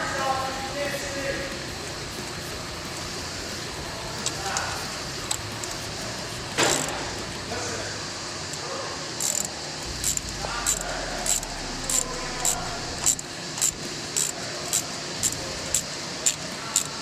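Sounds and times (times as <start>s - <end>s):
wrench clicking: 4.2s - 7.4s, 9.2s - 17.0s.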